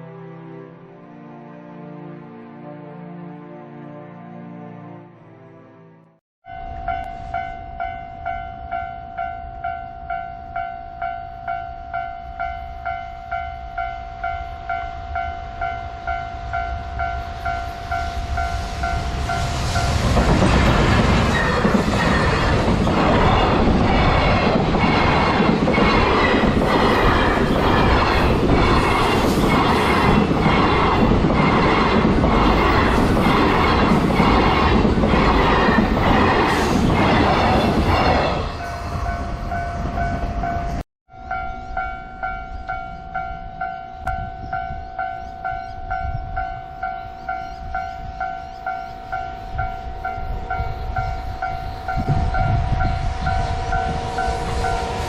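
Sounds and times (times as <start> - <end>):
train wheels clickety-clack: 19.0 - 38.4.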